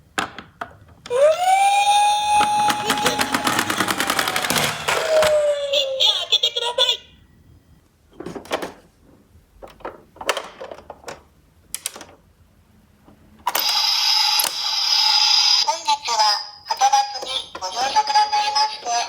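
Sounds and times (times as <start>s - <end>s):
toy cars clattering down slope: 2.3s - 5.4s.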